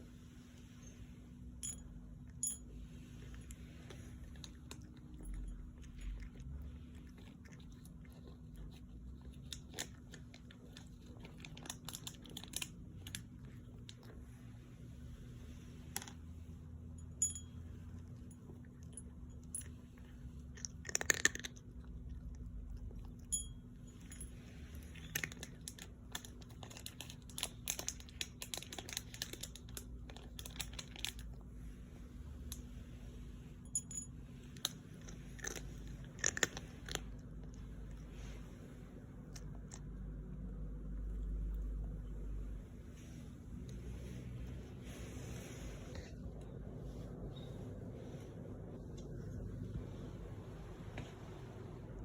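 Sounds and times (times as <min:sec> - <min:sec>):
crunchy chewing: 0:04.1 - 0:14.2, 0:20.0 - 0:23.3, 0:35.0 - 0:37.8.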